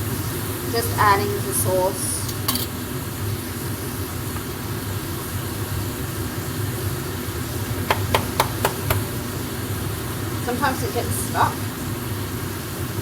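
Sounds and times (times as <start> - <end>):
food sizzling in a pan: 0.0 - 13.0
sharp taps: 7.9 - 9.1.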